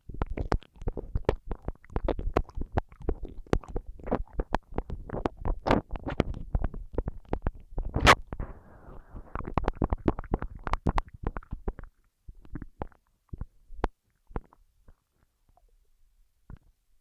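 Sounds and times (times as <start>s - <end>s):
mouth clicks and smacks on microphone: 0.0s - 16.8s.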